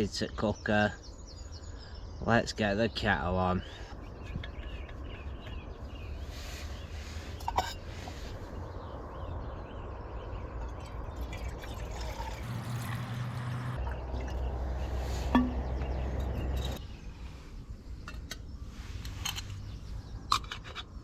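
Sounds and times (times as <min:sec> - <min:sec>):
water pouring into a kettle: 0:10.7 - 0:14.4.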